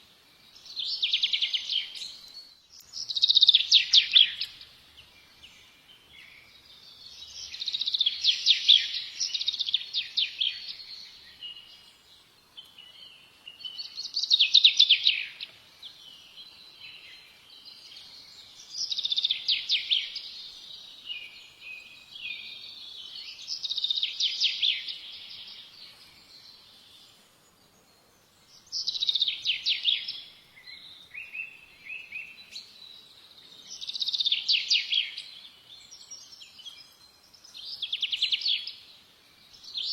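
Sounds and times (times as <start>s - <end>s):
songbird chirping: 0.0s - 39.9s.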